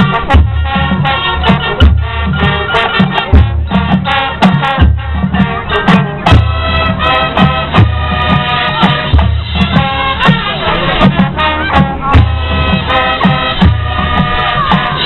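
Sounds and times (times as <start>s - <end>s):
bass drum and percussion hits: 0.0s - 15.0s
brass chords: 0.0s - 15.0s.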